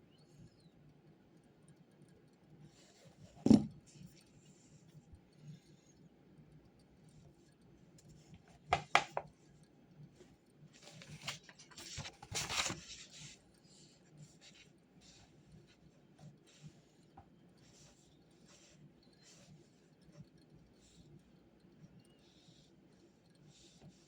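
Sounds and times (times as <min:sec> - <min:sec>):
sharp taps on desk: 0:08.7 - 0:09.3.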